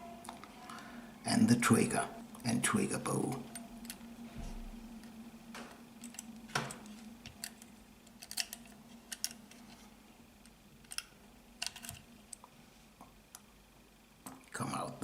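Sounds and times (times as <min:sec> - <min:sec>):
faint steady hum: 0:00.0 - 0:15.0
pistol parts clicking: 0:07.4 - 0:09.4.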